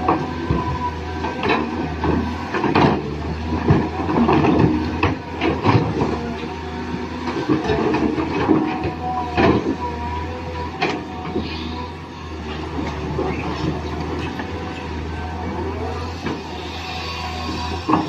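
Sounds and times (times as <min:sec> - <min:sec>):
toy excavator motors humming: 0:09.7 - 0:18.0.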